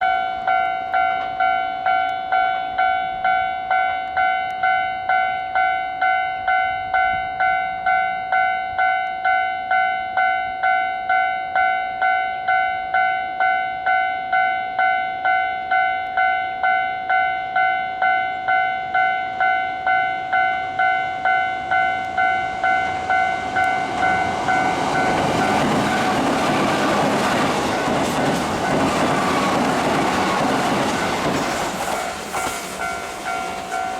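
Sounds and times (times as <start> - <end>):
level-crossing warning bell: 0.0 - 33.9
electric train running: 20.3 - 33.9.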